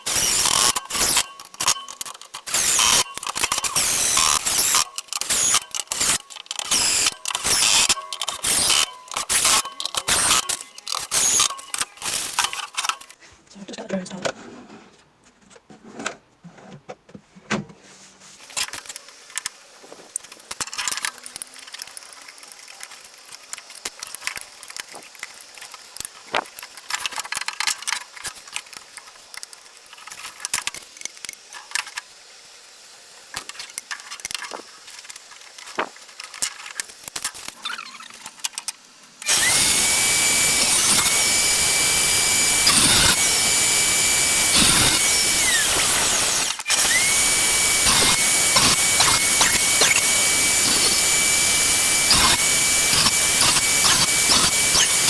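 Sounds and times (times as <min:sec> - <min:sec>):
power tool motor whining: 0:00.0 - 0:13.2, 0:39.2 - 0:55.0
wood and hardware clicking: 0:33.4 - 0:55.0.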